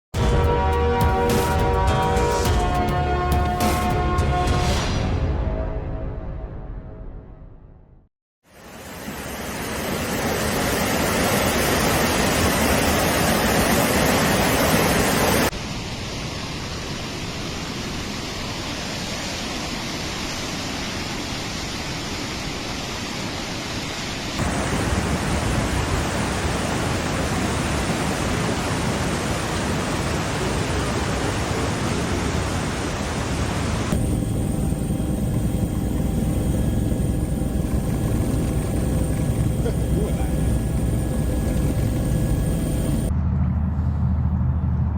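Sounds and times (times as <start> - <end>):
floodwater rushing: 9.7 - 34.0
faint steady tones: 33.9 - 43.1.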